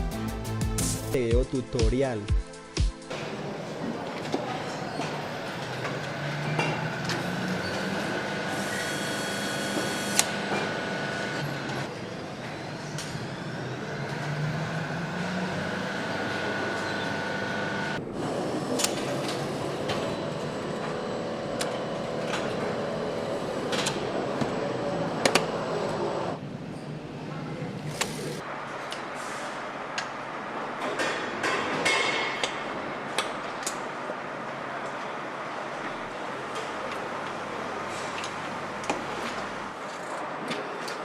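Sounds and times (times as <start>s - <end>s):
whining machine tones: 5.6s - 18.0s.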